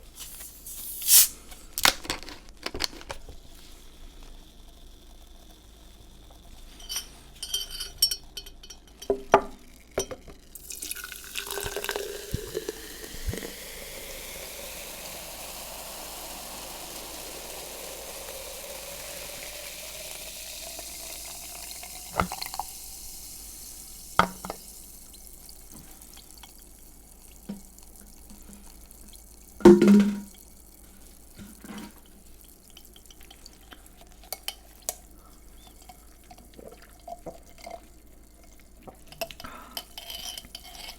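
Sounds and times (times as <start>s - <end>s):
fizzing hiss: 0.0s - 1.8s, 10.5s - 40.0s
drink pouring into glass: 3.3s - 30.8s, 31.4s - 40.9s
clicks and clinks: 6.7s - 9.4s.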